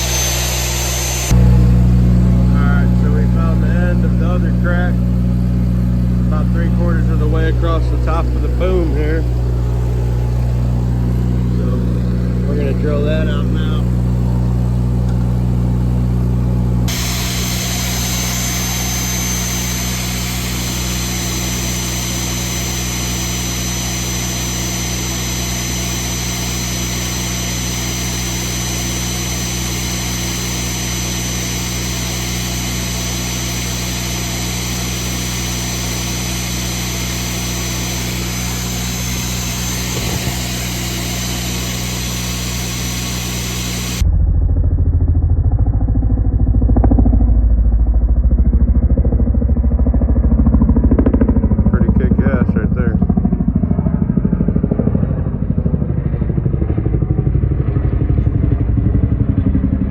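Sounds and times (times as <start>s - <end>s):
magnetic drill boring steel: 0.0s - 14.2s, 16.8s - 44.0s
muffled low rumble: 0.0s - 23.0s, 37.9s - 49.5s
engine hum: 0.0s - 59.9s.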